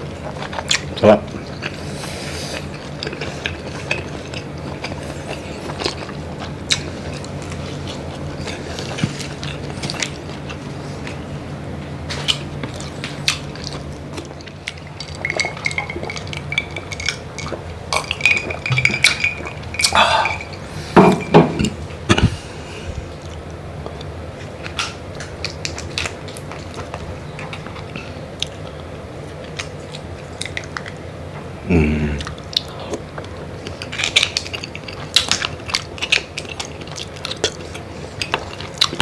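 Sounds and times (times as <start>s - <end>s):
low steady hum: 0.0s - 39.0s
plates and cutlery clinking: 14.8s - 22.3s
thin high tone: 18.6s - 21.4s.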